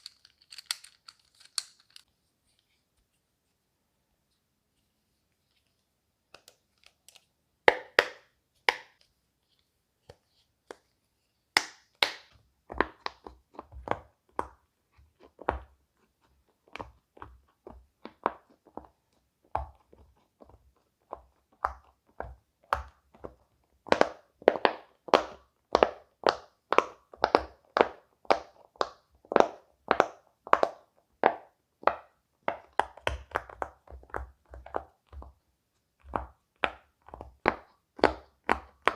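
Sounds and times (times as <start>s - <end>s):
pop-it toy bubbles popping: 7.7s - 9.0s, 21.2s - 35.4s, 36.0s - 38.9s.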